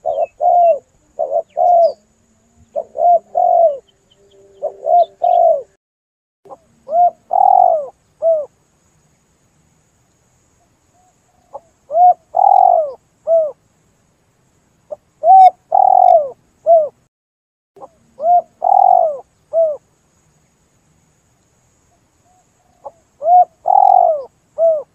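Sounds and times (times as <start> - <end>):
dove cooing: 0.0 - 5.8, 6.5 - 8.5, 11.4 - 13.6, 15.2 - 17.0, 17.8 - 19.8, 22.3 - 24.9.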